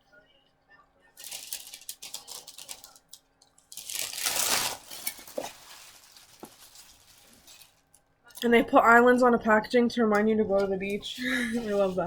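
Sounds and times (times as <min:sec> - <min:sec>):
food packaging crinkling and clicking: 0:01.2 - 0:08.5.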